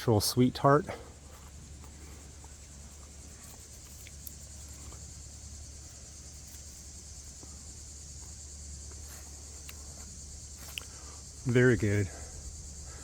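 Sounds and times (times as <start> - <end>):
high-pitched insect chorus: 0.0 - 13.0
low steady rumble: 0.0 - 13.0.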